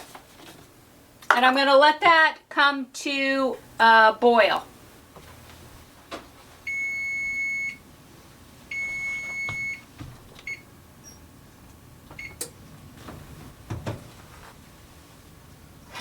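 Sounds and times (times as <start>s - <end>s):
oven timer long beeps: 6.6s - 7.8s, 8.7s - 11.2s, 12.2s - 12.5s.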